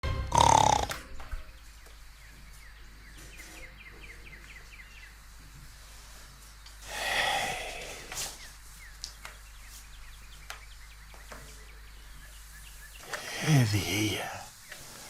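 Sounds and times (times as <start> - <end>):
faint bird chirps: 0.4 - 15.0
woman snoring: 6.9 - 7.9.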